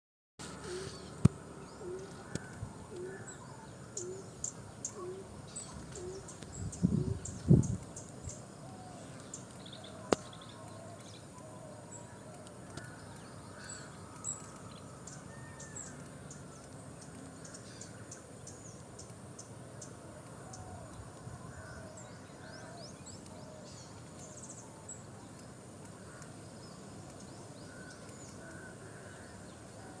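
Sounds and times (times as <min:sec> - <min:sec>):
lower curving bird calls: 0:00.4 - 0:30.0
birds chirping: 0:00.5 - 0:30.0
low background hiss: 0:00.5 - 0:30.0
sharp click: 0:09.2 - 0:11.2.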